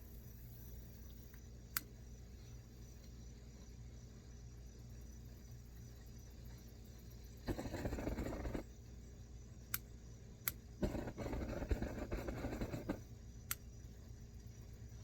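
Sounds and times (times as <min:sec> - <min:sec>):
scraping on metal stove: 0:07.5 - 0:08.6, 0:10.8 - 0:13.0.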